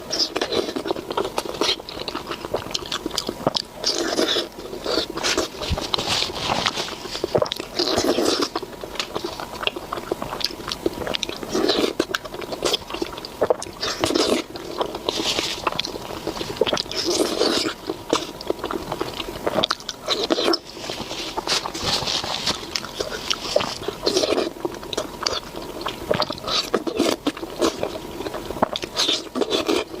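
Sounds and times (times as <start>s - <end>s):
person chewing food: 0.0s - 30.0s.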